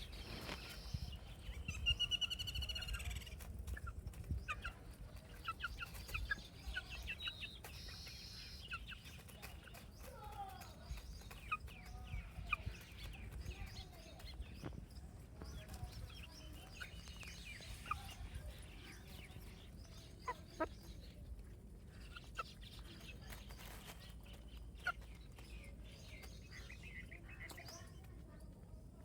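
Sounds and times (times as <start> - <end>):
baby chicks peeping: 0.0 - 29.0.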